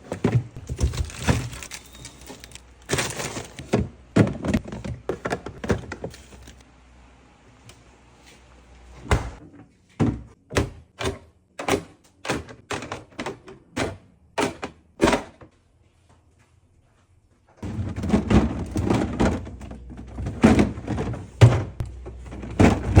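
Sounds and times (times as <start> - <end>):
clattering rumbling noise: 0.1 - 6.6, 17.6 - 23.0
containers knocking on shelves: 2.9 - 6.1, 17.6 - 23.0.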